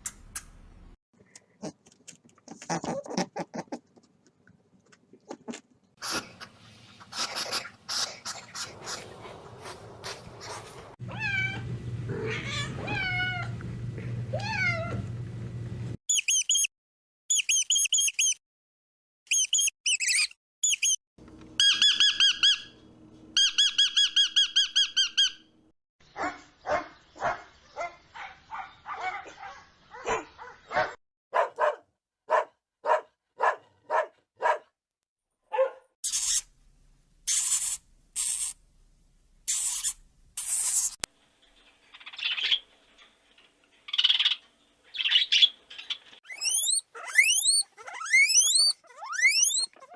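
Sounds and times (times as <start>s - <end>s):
high chirps and squeaks: 16.1s - 16.7s, 17.3s - 18.4s, 19.3s - 21.0s, 21.6s - 22.7s, 36.0s - 36.5s, 37.3s - 38.6s, 39.5s - 41.0s, 41.6s - 43.0s, 43.8s - 49.9s
animal calls: 46.3s - 49.9s.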